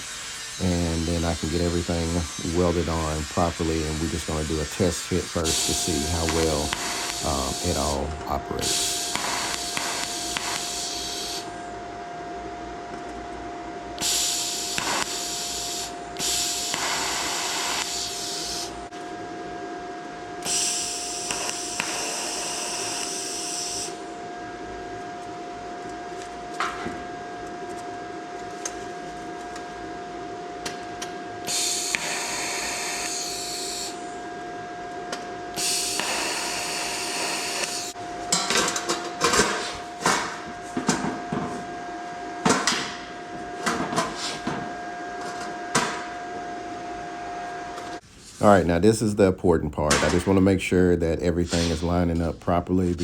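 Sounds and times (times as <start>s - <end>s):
power grinder grinding metal: 0.0s - 11.5s.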